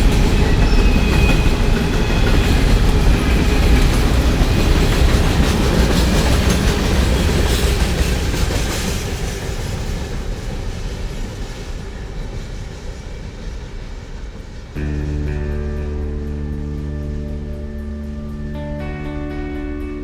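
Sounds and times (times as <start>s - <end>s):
train wheels clacking over rails: 0.0s - 14.8s.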